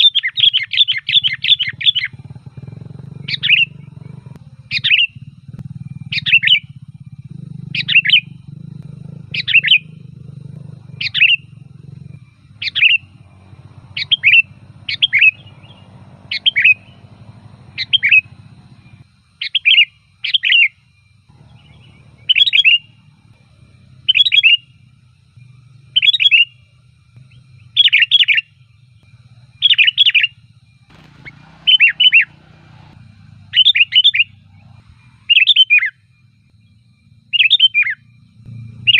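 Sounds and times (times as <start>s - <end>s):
bird calling loudly: 0.0s - 2.2s, 2.8s - 5.2s, 6.1s - 6.7s, 7.8s - 8.3s, 10.8s - 11.8s, 12.4s - 23.4s, 24.0s - 24.8s, 27.8s - 28.5s, 29.5s - 36.0s, 37.3s - 38.0s
low steady hum: 20.0s - 38.9s.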